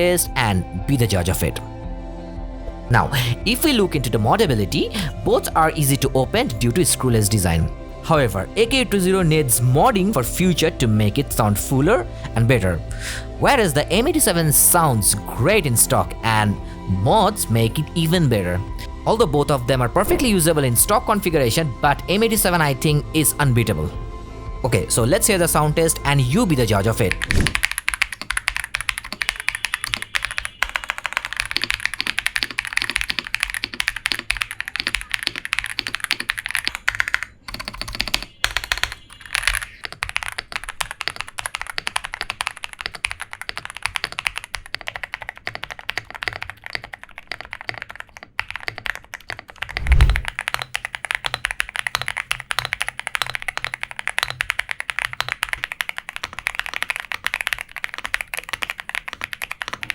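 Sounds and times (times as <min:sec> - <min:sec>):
mechanical keyboard typing: 0:26.6 - 0:59.9.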